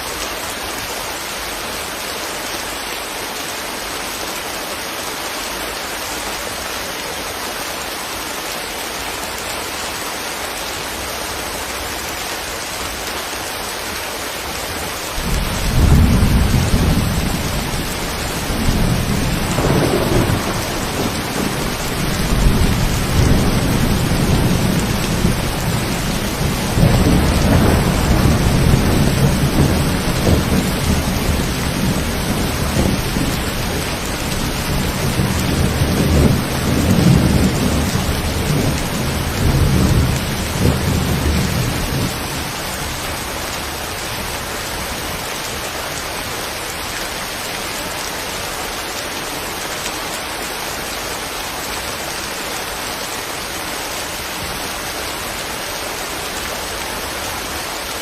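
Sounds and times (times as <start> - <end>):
steady rain falling: 0.0 - 58.0
thunder rumbling: 15.2 - 43.4.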